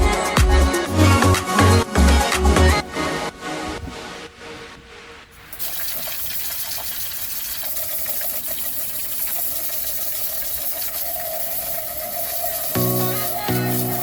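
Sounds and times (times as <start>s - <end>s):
water spray hissing: 5.4s - 14.0s.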